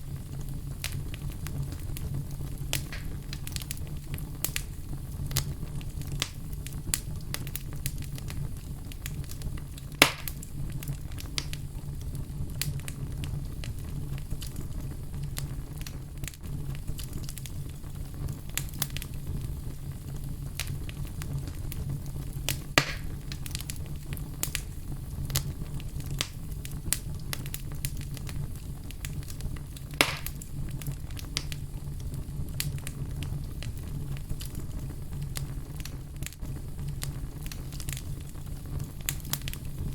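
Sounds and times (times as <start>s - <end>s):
loud fire pops: 0.0s - 39.9s
wood fire crackling: 0.0s - 39.9s.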